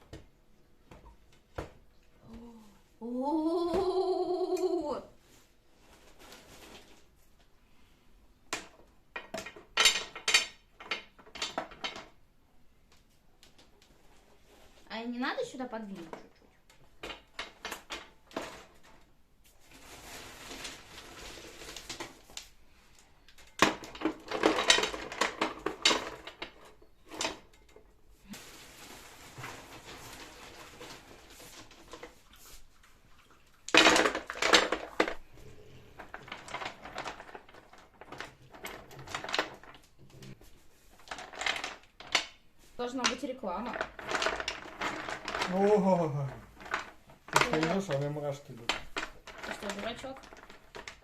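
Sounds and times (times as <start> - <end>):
metal parts clattering and knocking: 9.2 - 12.2, 23.4 - 27.9, 33.7 - 35.2, 36.0 - 40.4, 41.0 - 42.3, 43.7 - 45.6, 46.6 - 51.0.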